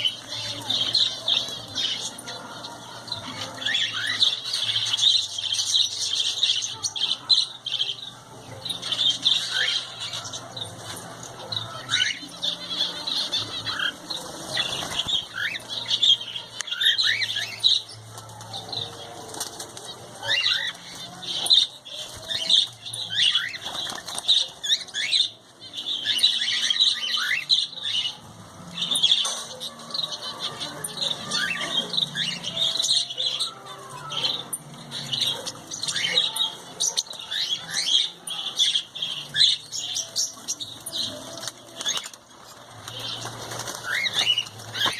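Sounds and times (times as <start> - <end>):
cage birds chattering: 0.0 - 44.9
wings flapping: 13.8 - 15.8, 18.1 - 21.2, 23.4 - 24.8, 41.3 - 44.9.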